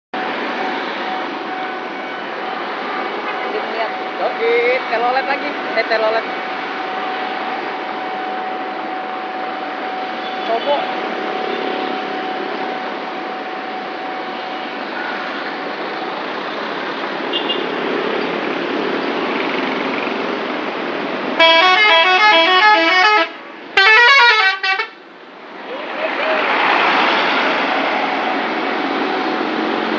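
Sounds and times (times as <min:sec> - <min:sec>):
road noise: 0:00.1 - 0:29.9
bus musical horn tune: 0:21.4 - 0:25.0.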